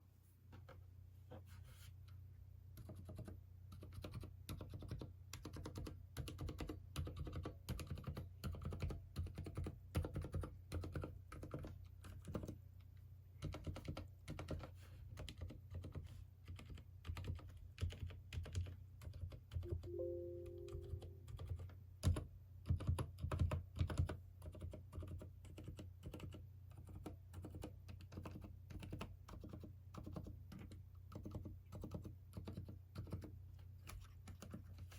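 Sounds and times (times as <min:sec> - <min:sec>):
fast typing on mechanical keyboard: 0:02.8 - 0:12.6, 0:13.4 - 0:19.9, 0:22.0 - 0:34.8
short steady tone: 0:19.7 - 0:21.4.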